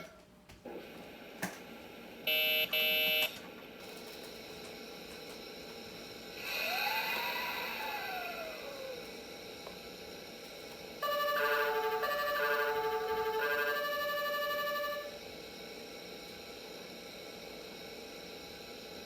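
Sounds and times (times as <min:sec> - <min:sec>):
electric train motor whine: 0:00.7 - 0:19.0
short buzzer beeps: 0:02.3 - 0:03.4, 0:11.0 - 0:15.2.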